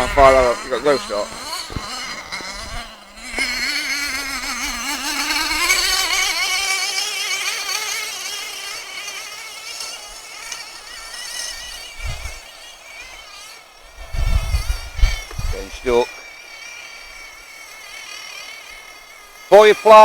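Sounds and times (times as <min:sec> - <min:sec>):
low thumps: 0:00.0 - 0:05.0
small two-stroke engine buzzing: 0:00.0 - 0:20.0.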